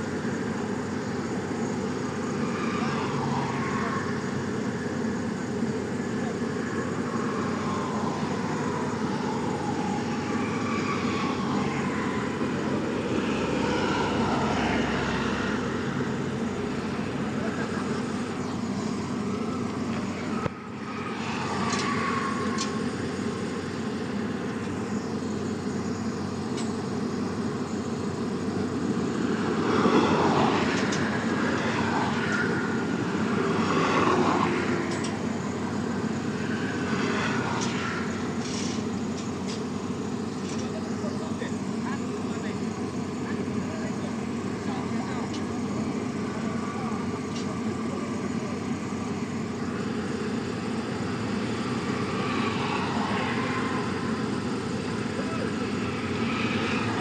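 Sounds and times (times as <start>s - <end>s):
heavy diesel engine running: 0.0s - 31.6s, 32.4s - 57.0s
wavering whines: 0.0s - 57.0s.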